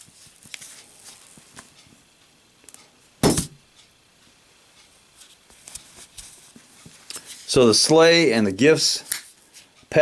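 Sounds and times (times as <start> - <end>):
lighter hitting the floor: 3.2 - 3.6.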